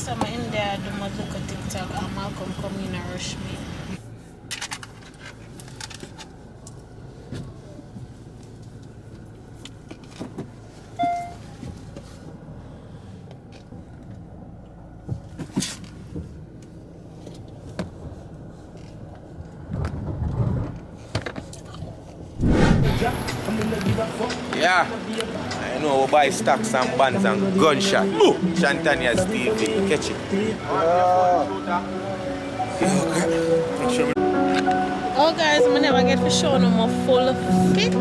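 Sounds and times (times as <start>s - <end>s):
short electronic beep: 11.0s - 11.5s
car cabin rumble: 22.3s - 24.5s.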